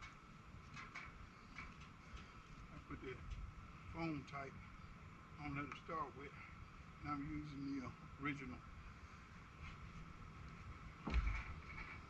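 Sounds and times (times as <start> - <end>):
faint steady background hum: 0.0 - 12.0.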